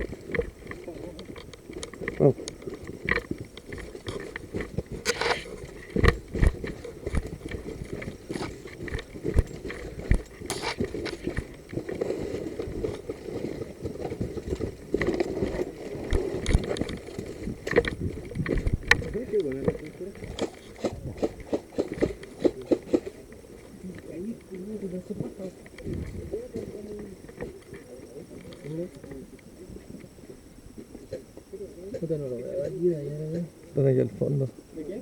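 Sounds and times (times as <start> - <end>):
footsteps on gravel: 0.0 - 12.2
gear knocking against camera: 0.0 - 13.0, 13.8 - 23.2.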